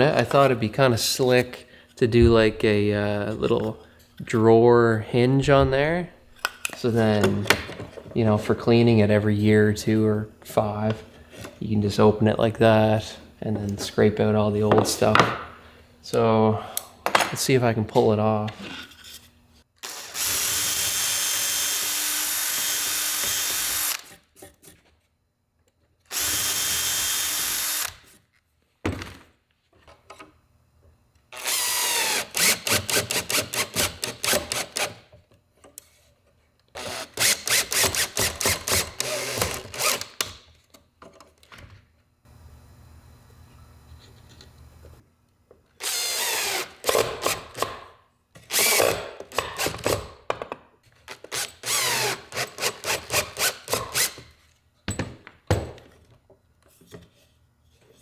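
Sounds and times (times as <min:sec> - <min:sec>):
power drill running in spurts: 0:19.8 - 0:24.2, 0:26.1 - 0:28.0, 0:31.4 - 0:35.0, 0:36.8 - 0:40.3, 0:45.8 - 0:47.7, 0:48.5 - 0:50.0, 0:51.1 - 0:54.3.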